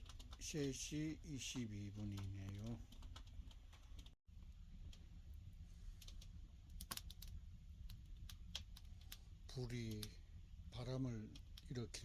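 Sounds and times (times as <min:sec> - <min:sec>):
fire crackling and popping: 0:00.0 - 0:12.0.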